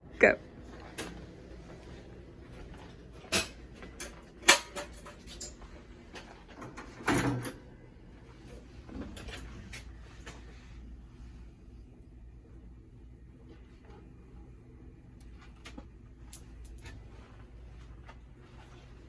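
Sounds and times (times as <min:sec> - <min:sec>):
cage door and latch clattering: 0:03.3 - 0:05.6, 0:06.6 - 0:07.6.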